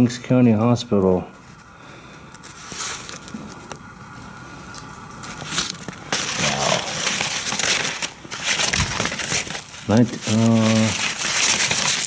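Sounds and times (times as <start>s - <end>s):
paper rustling and crinkling: 2.4s - 3.8s, 4.8s - 12.0s.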